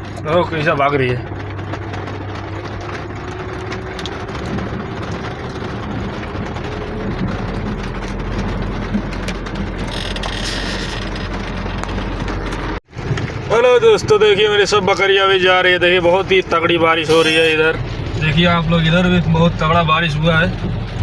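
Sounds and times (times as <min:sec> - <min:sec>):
heavy rain falling: 0:00.0 - 0:21.0.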